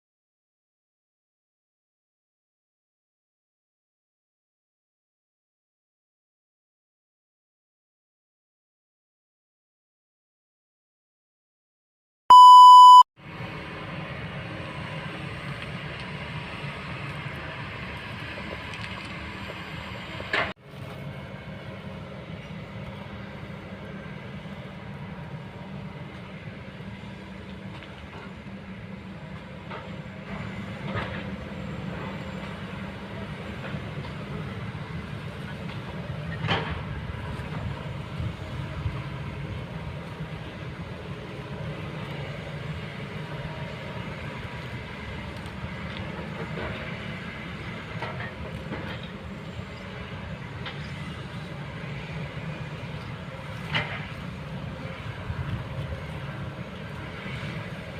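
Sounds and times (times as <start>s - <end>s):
loud beep: 12.3s - 13.1s
excavator diesel engine drone: 12.3s - 57.9s.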